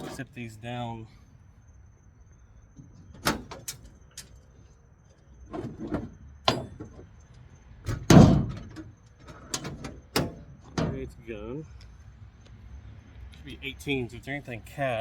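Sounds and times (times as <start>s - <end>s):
tools clunking and knocking: 0.0s - 0.2s, 5.2s - 11.1s.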